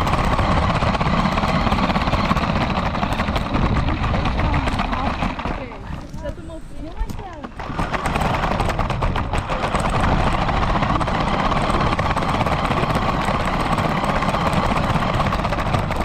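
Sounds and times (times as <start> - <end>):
rattling and clicking from road: 0.0 - 16.0
rc car motor and wheels: 0.0 - 16.0.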